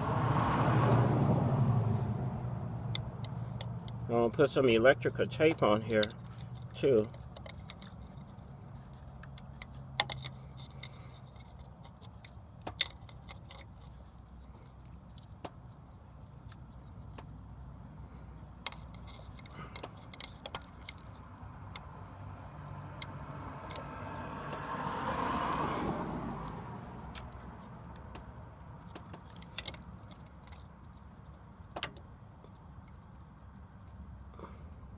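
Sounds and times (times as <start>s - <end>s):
passing vehicle: 0.0s - 7.1s, 20.6s - 30.7s
tape and wiring clicks and crackles: 18.6s - 25.7s, 26.4s - 33.7s.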